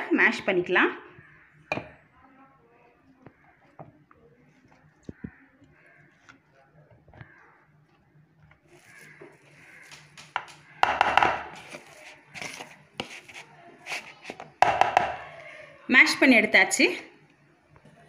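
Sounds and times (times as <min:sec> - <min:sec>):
potatoes being mashed in bowl: 0:08.4 - 0:15.1.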